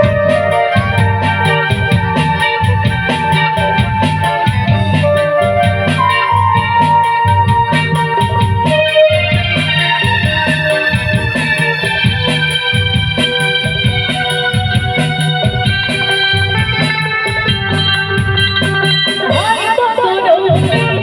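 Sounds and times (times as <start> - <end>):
drum beat with heavy bass: 0.0 - 21.0
keyboard chords: 0.0 - 21.0.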